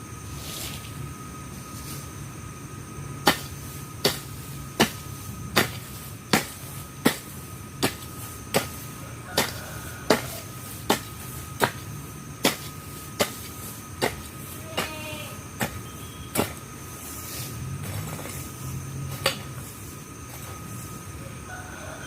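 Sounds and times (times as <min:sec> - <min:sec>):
hand tool chopping weeds: 0:03.2 - 0:18.5.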